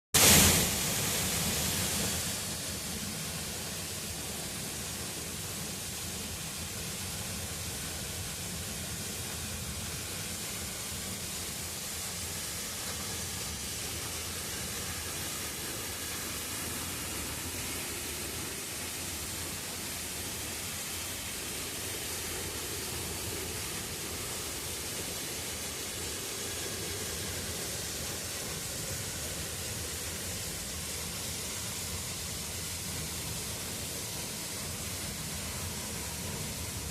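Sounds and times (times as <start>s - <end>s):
waterfall rushing: 7.6s - 36.9s.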